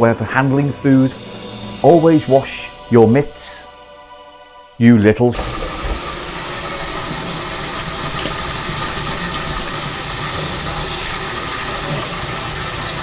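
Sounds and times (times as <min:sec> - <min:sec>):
water running from a tap: 0:05.4 - 0:13.0.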